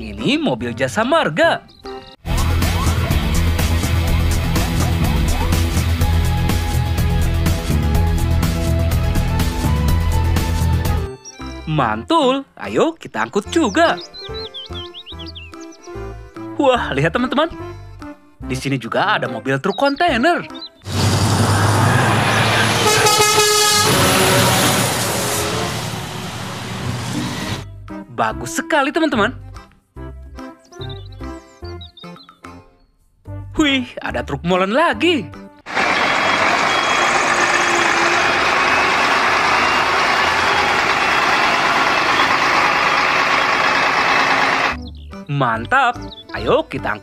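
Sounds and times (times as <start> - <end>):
truck engine running: 20.9 - 27.6, 35.7 - 44.8
truck horn: 21.5 - 27.6, 35.7 - 44.8.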